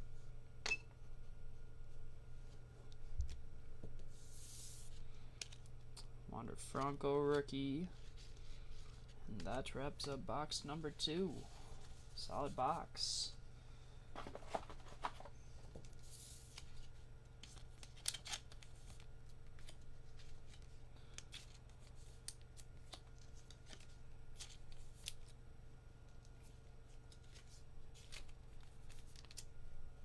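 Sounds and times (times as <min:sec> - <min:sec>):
low steady hum: 0:00.0 - 0:30.0
cards handled with clicks and scrapes: 0:04.0 - 0:12.8, 0:14.2 - 0:25.4, 0:26.0 - 0:29.5
packaging crinkle: 0:15.9 - 0:25.4, 0:26.9 - 0:29.5.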